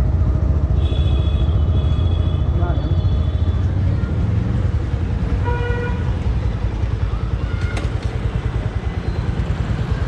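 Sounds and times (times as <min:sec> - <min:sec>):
motorcycle engine rumble: 0:00.0 - 0:10.0
vehicle horn honking: 0:00.8 - 0:03.5, 0:05.4 - 0:06.1.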